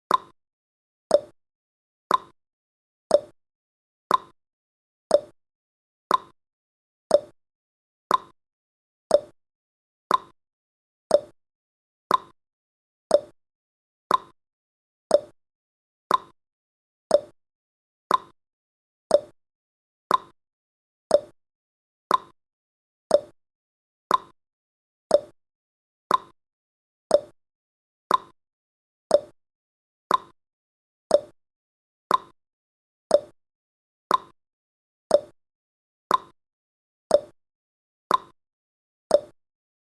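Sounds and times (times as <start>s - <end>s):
timer ticking: 0.1s - 0.3s, 1.1s - 1.3s, 2.1s - 2.4s, 3.1s - 3.4s, 4.1s - 4.4s, 5.1s - 5.3s, 6.1s - 6.4s, 7.1s - 7.4s, 8.1s - 8.4s, 9.1s - 9.4s, 10.1s - 10.4s, 11.1s - 11.4s, 12.1s - 12.4s, 13.1s - 13.4s, 14.1s - 14.4s, 15.1s - 15.4s, 16.1s - 16.4s, 17.1s - 17.4s, 18.1s - 18.4s, 19.1s - 19.4s, 20.1s - 20.4s, 21.1s - 21.4s, 22.1s - 22.4s, 23.1s - 23.4s, 24.1s - 24.4s, 25.1s - 25.4s, 26.1s - 26.4s, 27.1s - 27.4s, 28.1s - 28.4s, 29.1s - 29.4s, 30.1s - 30.4s, 31.1s - 31.4s, 32.1s - 32.4s, 33.1s - 33.4s, 34.1s - 34.4s, 35.1s - 35.4s, 36.1s - 36.4s, 37.1s - 37.4s, 38.1s - 38.4s, 39.1s - 39.4s.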